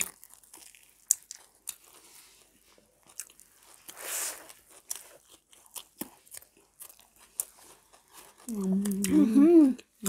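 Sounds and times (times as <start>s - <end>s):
burger chewing crunches: 0.0s - 8.5s.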